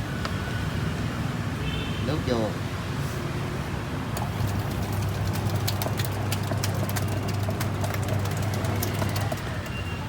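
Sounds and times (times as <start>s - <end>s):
washing machine humming: 4.1s - 10.0s
quick irregular clicks: 4.2s - 9.8s.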